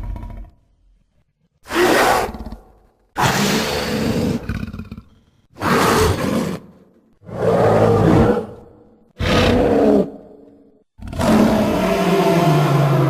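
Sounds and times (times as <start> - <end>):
dinosaur roars: 3.2 - 10.4, 11.0 - 13.0.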